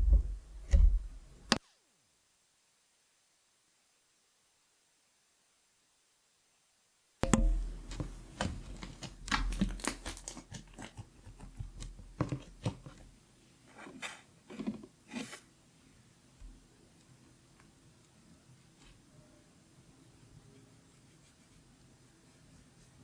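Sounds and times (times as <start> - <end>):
slime crackling and popping: 8.8 - 10.9.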